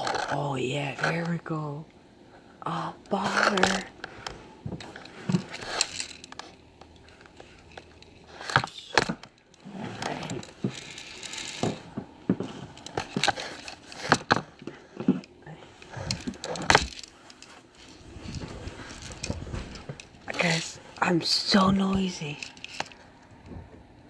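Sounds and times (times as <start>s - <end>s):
handling clicks and knocks: 3.4s - 20.6s.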